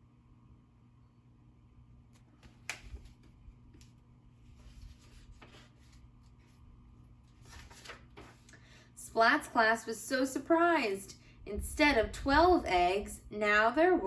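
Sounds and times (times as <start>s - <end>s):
faint steady hum: 0.0s - 14.0s
paper page rustling: 2.1s - 8.5s.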